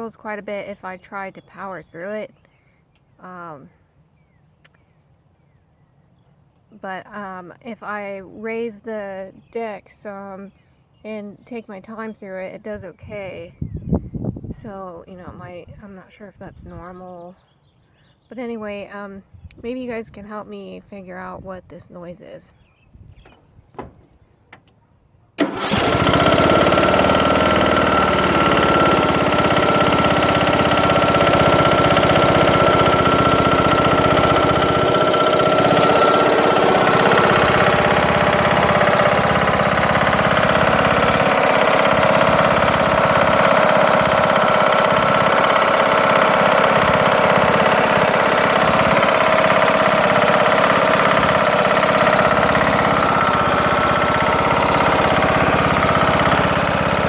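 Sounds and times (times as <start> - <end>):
lawn tractor engine running: 25.4 - 57.0
loud engine knocking: 25.4 - 57.0.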